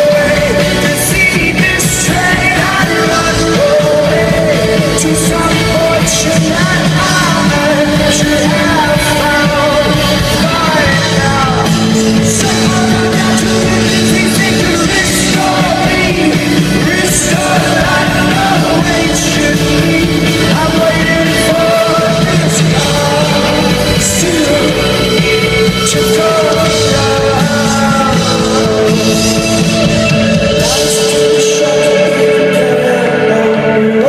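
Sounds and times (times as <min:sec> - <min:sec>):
live rock band: 0:00.0 - 0:34.0
man singing: 0:00.0 - 0:34.0.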